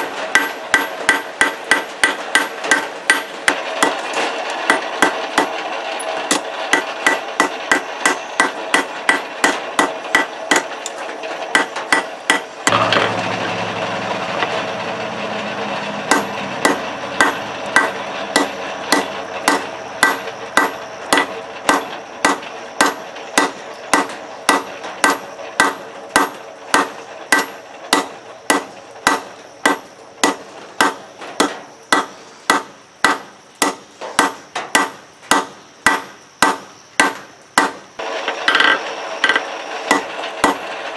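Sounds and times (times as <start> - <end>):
hammer striking steel on anvil: 0.0 - 5.6, 6.3 - 14.8, 15.9 - 37.8, 39.2 - 40.6
anvil ringing: 6.3 - 10.7, 11.6 - 35.0
low hum: 12.6 - 23.0.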